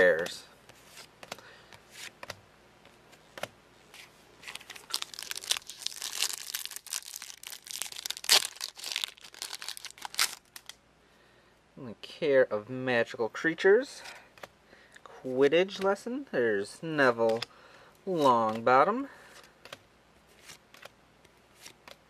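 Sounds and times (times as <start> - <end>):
foil wrapper tearing and crinkling: 4.5 - 10.8.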